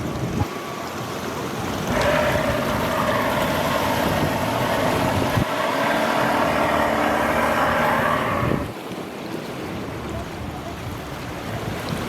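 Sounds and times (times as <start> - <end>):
jet engines whining: 1.9 - 8.7.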